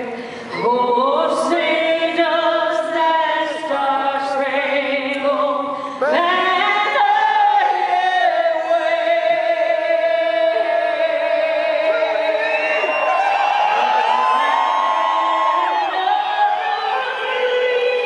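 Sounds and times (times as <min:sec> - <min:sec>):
person singing an anthem: 0:00.0 - 0:13.0.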